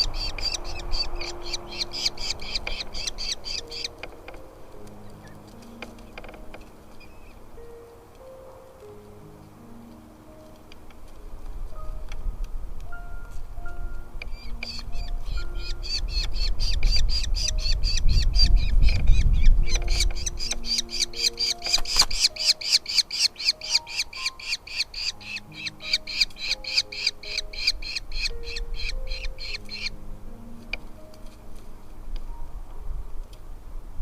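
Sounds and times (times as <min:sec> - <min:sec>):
falcons calling: 0:00.0 - 0:09.0, 0:14.3 - 0:30.0
soft background music: 0:00.0 - 0:34.0.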